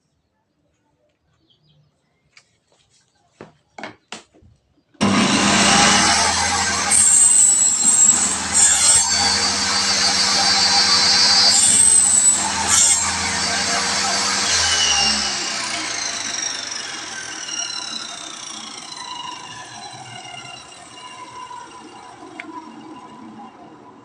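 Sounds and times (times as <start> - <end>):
high saw whine: 5.0 - 24.0
table saw cutting wood: 5.0 - 24.0.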